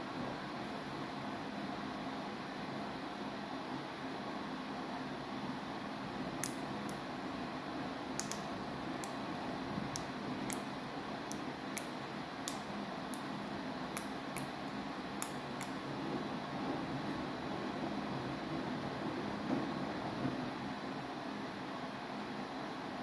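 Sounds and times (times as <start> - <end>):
sharp clicks: 6.4 - 7.0, 8.2 - 9.2, 12.5 - 13.3
washing machine hum and whoosh: 15.8 - 21.2.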